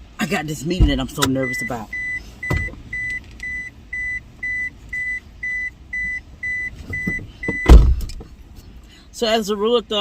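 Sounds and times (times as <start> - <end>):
car warning chime beeping: 0.8 - 7.9.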